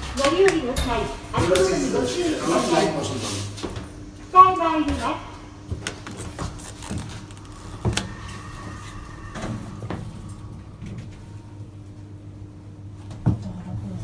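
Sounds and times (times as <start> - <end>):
hydraulic pump motor hum: 5.3 - 12.8
thin high tone: 7.0 - 12.0.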